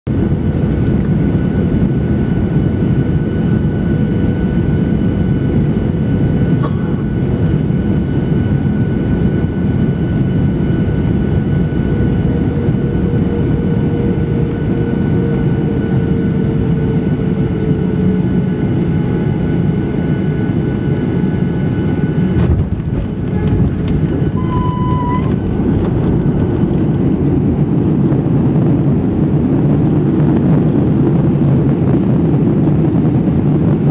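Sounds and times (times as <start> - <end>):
airliner engine and airflow rush: 0.1 - 33.9
faint whining tones: 11.1 - 27.8
brief higher tone: 24.3 - 25.5.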